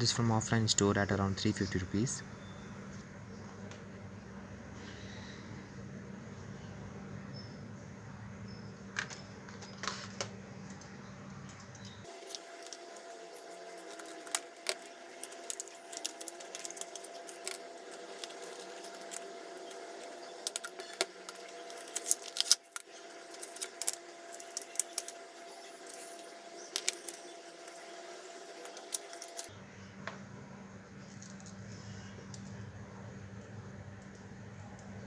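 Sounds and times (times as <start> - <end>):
packaging clicks and crinkles: 12.0 - 29.5.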